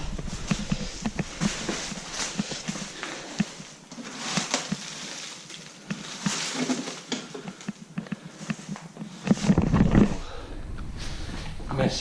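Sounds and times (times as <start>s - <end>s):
footsteps on gritty floor: 0.0s - 10.2s.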